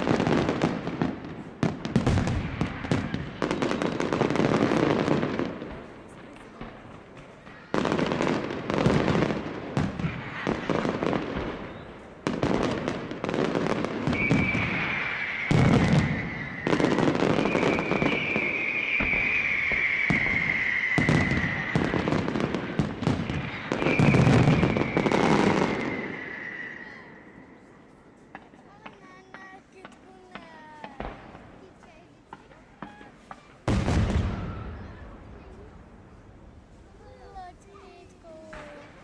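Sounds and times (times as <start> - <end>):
fireworks bangs and crackling: 0.0 - 39.0
long high whistle: 14.1 - 21.8, 23.7 - 27.4.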